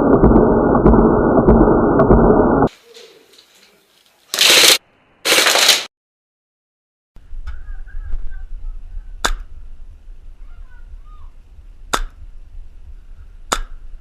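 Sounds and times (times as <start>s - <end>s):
steady low rumble: 0.0s - 2.7s, 7.2s - 14.0s.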